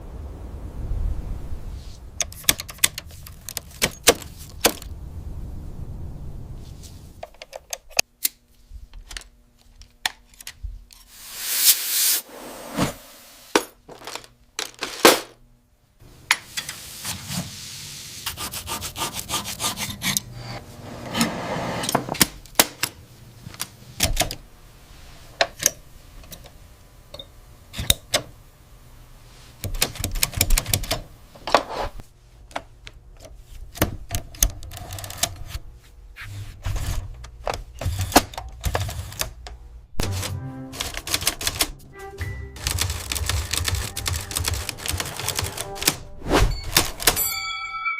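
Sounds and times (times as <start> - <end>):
typewriter key strikes: 46.6 - 47.4.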